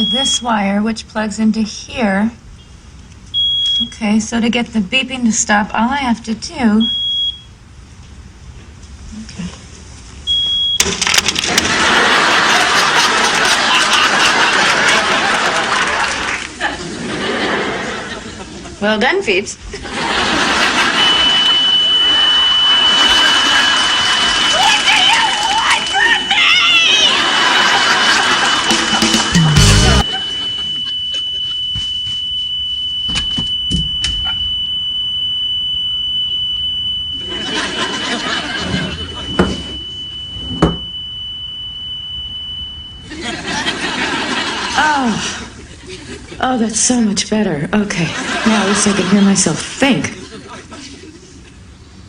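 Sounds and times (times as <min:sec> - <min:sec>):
smoke detector beep: 0:00.0 - 0:00.6, 0:02.6 - 0:04.1, 0:06.8 - 0:07.6, 0:10.2 - 0:11.0, 0:20.5 - 0:25.4, 0:26.5 - 0:43.8
audience laughter: 0:11.4 - 0:18.9, 0:19.6 - 0:31.7, 0:37.2 - 0:39.8, 0:43.0 - 0:46.4, 0:47.9 - 0:51.7
audience applause: 0:11.5 - 0:16.6, 0:22.6 - 0:30.0.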